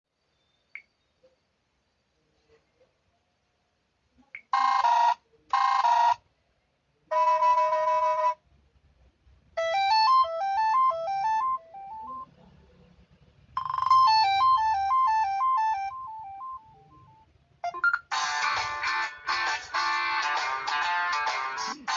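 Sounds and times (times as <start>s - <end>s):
phone alert beeps: 7.1s - 8.4s, 9.8s - 12.3s, 13.6s - 18.2s.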